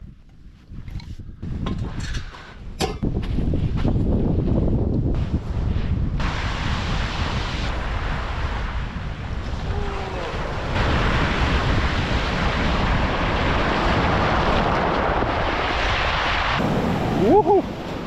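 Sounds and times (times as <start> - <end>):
wind buffeting microphone: 0.0 - 18.0
surf on rocky shore: 6.2 - 18.0.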